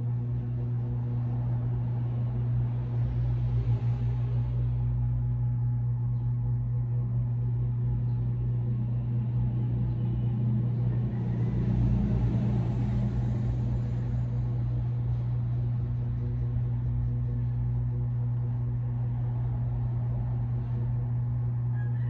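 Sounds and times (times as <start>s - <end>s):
low mechanical hum: 0.0s - 22.0s
broad swell of noise: 10.4s - 15.2s.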